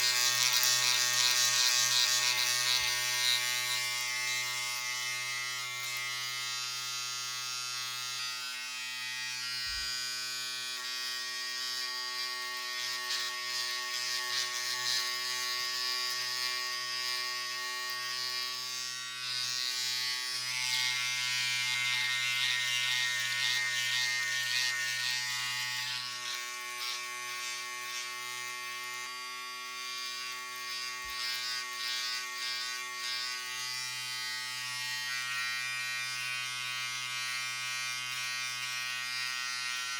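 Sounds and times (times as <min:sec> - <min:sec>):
electric razor buzzing: 0:00.0 - 0:39.9
razor cutting stubble rasp: 0:00.0 - 0:39.9.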